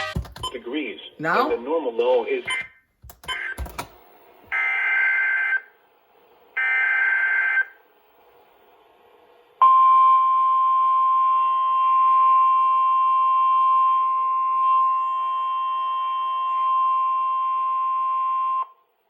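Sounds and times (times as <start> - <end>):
steady warning alarm tone: 2.5 - 3.8, 4.5 - 5.8, 6.6 - 7.8, 9.6 - 18.8.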